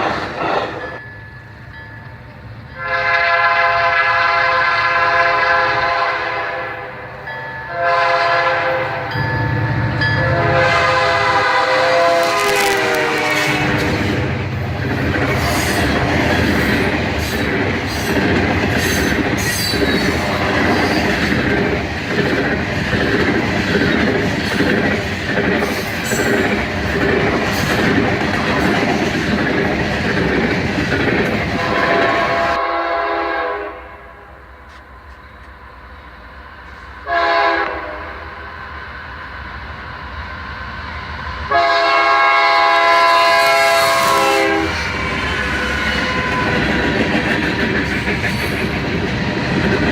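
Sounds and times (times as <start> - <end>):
locomotive air horn blasts: 2.8 - 7.0, 7.7 - 9.1, 10.2 - 14.2, 20.2 - 21.0, 31.6 - 34.2, 37.0 - 38.3, 41.5 - 46.6
train wheels clacking on rails: 12.2 - 32.6, 43.0 - 49.9.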